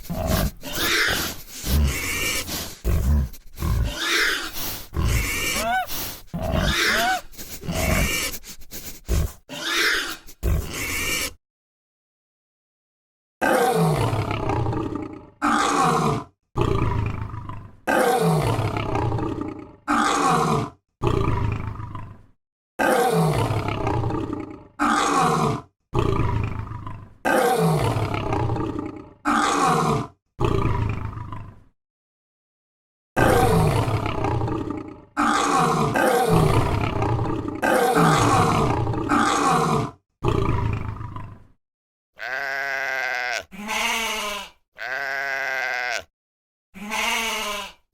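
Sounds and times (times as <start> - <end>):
lion roaring: 0.0 - 8.3, 13.4 - 22.2, 22.8 - 31.6, 33.2 - 41.5.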